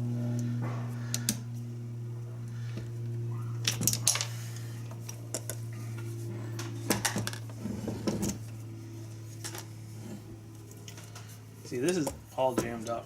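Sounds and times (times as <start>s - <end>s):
steady low hum: 0.0s - 13.0s
small metal parts clinking: 3.6s - 4.4s.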